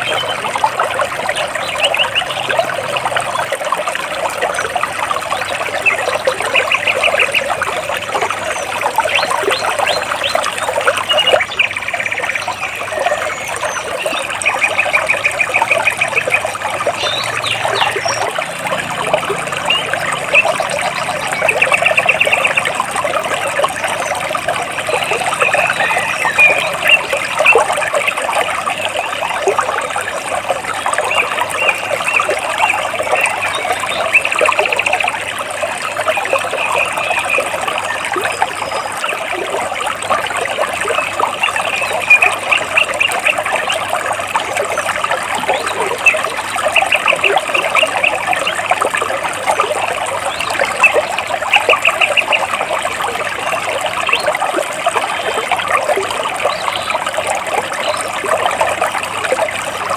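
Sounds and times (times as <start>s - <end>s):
stream trickling over rocks: 0.0s - 59.9s
bird trilling: 19.6s - 22.8s.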